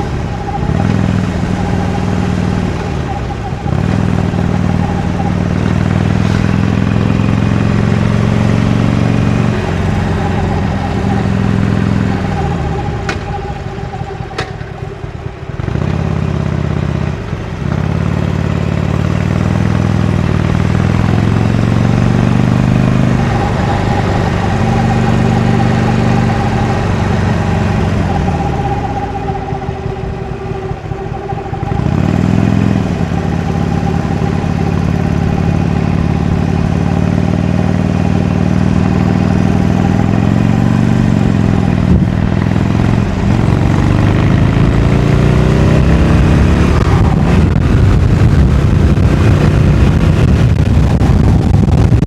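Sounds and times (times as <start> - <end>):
motorcycle engine revving: 0.0 - 52.0.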